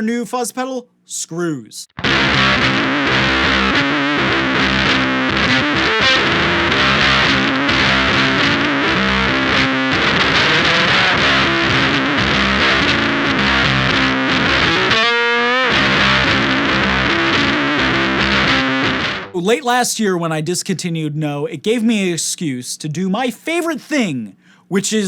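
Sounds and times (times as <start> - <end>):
distorted fuzz electric guitar: 2.0 - 19.4.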